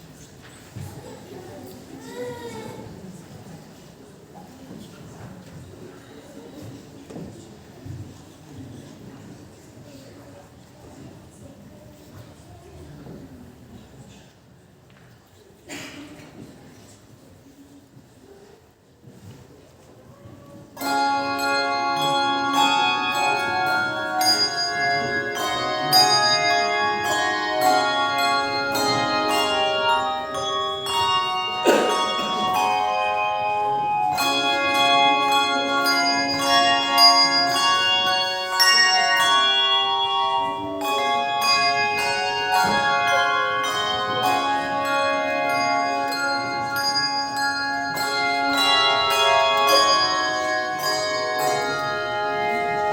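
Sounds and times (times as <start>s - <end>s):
ensemble of bells playing music: 20.8s - 52.9s.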